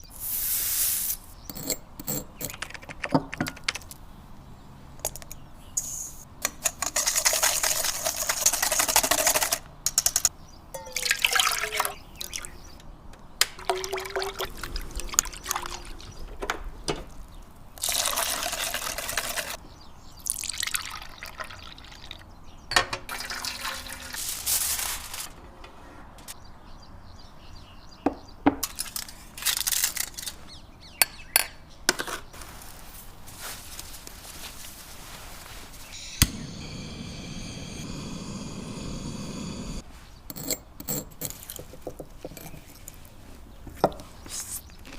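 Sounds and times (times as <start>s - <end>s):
utensils clinking against bowls: 6.4s - 12.0s
liquid pouring and stirring: 6.6s - 9.6s, 10.8s - 12.5s, 13.5s - 16.2s, 17.8s - 19.6s, 23.1s - 24.3s.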